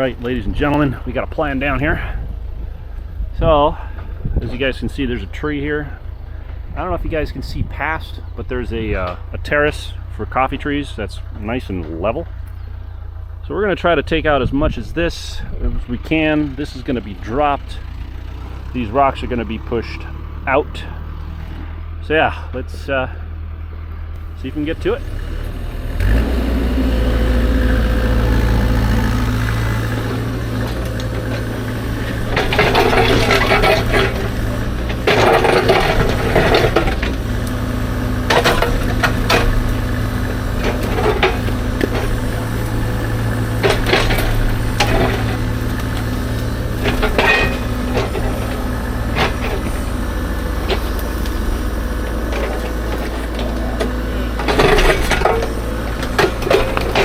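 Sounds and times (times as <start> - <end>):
diesel engine under load: 0.0 - 57.0
bucket scraping dirt and rock: 27.0 - 57.0
rock clunking against steel: 27.3 - 57.0.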